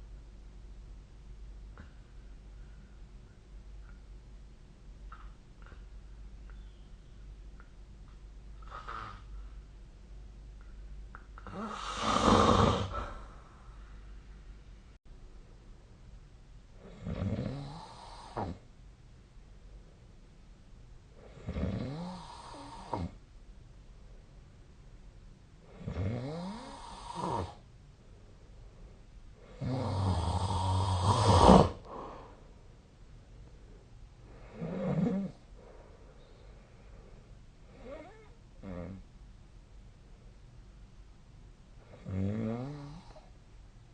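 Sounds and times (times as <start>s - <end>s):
faint breath: 1.7s - 4.0s, 11.5s - 14.8s, 31.8s - 32.8s, 35.5s - 37.7s
person snoring loudly: 11.4s - 13.3s, 16.8s - 18.6s, 21.4s - 23.2s, 25.8s - 27.6s, 29.5s - 31.8s.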